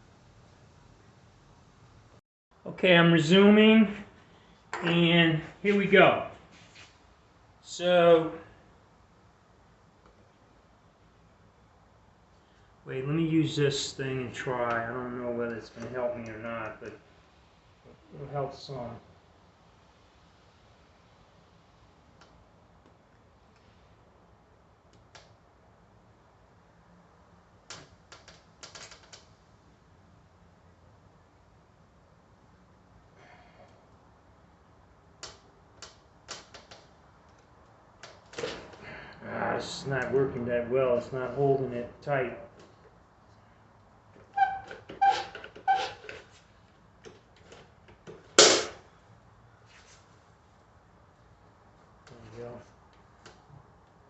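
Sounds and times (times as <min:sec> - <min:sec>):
tool squeaks: 0:44.3 - 0:46.4.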